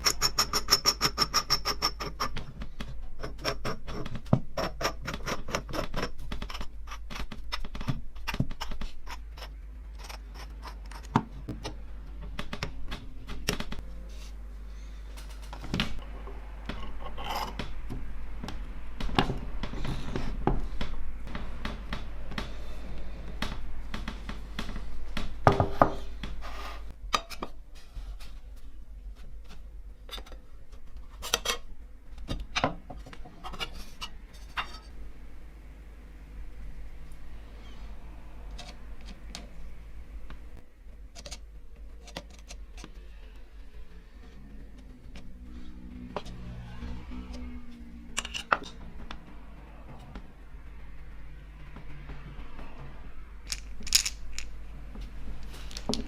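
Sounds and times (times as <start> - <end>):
metal scraping and rubbing: 0.0 - 12.1, 15.3 - 18.4, 33.2 - 34.9, 40.4 - 56.0
metal parts clicking and tapping: 0.0 - 13.8, 41.1 - 43.0, 48.2 - 48.8, 53.5 - 54.6.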